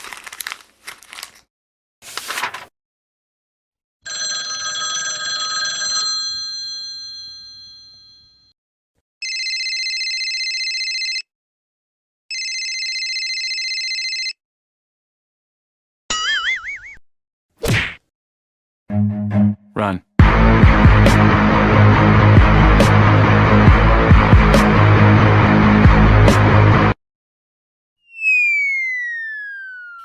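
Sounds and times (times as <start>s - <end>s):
telephone ringing: 4.1s - 8.5s, 9.2s - 11.3s, 12.3s - 14.4s.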